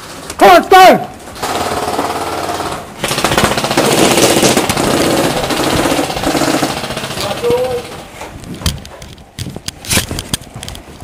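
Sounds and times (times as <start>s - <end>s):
muffled airsoft gun rapid fire: 1.4s - 8.1s.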